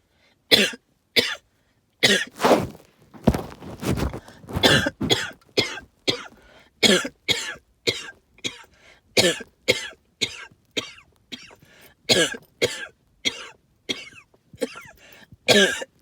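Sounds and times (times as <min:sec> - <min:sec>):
person coughing with wheeze: 0:00.5 - 0:01.4, 0:03.3 - 0:08.6, 0:09.2 - 0:14.9, 0:15.5 - 0:16.0.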